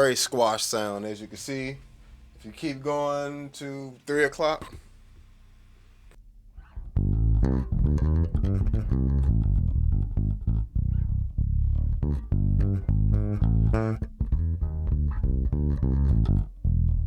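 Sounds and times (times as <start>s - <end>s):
compressed electric bass guitar: 6.2s - 17.0s.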